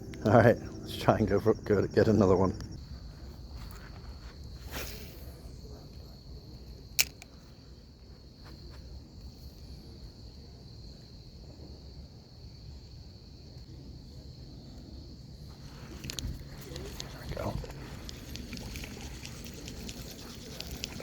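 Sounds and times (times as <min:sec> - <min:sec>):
high-pitched insect drone: 0:00.0 - 0:02.8
sharp click: 0:07.0 - 0:07.3.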